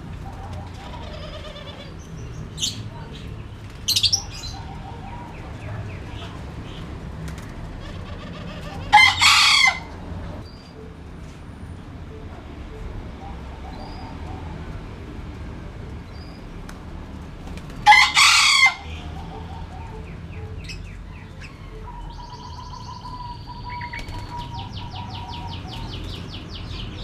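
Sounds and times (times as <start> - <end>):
small birds chirping: 0.0 - 9.3, 15.9 - 16.6, 18.8 - 27.0
chicken call: 7.9 - 10.0, 17.9 - 20.0.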